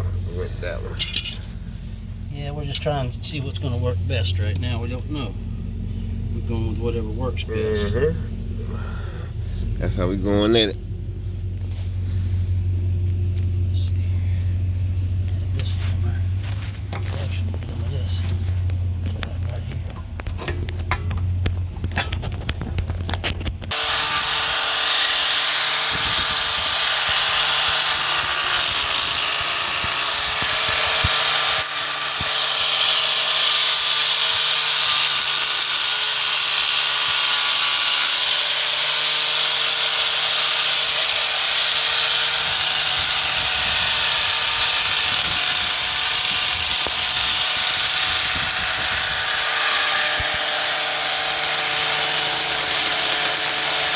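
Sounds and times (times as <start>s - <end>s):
low hum: 0.0s - 24.5s
power tool whining: 0.0s - 53.9s.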